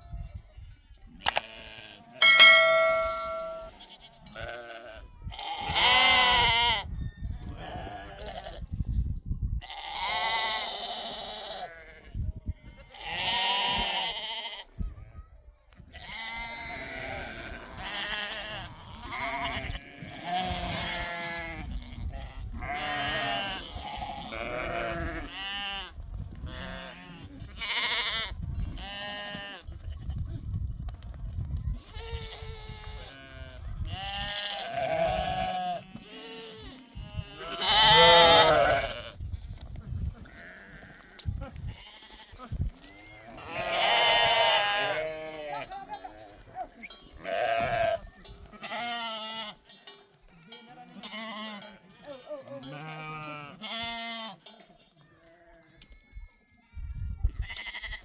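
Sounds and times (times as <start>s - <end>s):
sheep bell ringing: 0.0s - 4.8s, 42.8s - 55.4s
sheep bleating: 1.3s - 6.9s, 7.6s - 8.6s, 9.6s - 14.7s, 16.0s - 25.9s, 26.5s - 29.7s, 32.0s - 39.1s, 40.2s - 49.7s, 50.4s - 54.5s, 57.4s - 58.0s.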